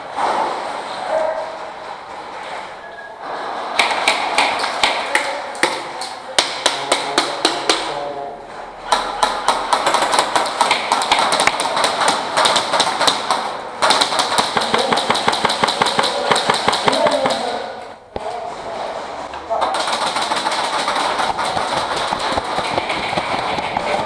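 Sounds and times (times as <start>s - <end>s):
airsoft guns firing: 3.8s - 7.9s, 8.9s - 17.8s, 19.7s - 24.0s
pellets striking hard surfaces: 3.8s - 8.0s, 8.9s - 18.3s, 19.6s - 24.0s.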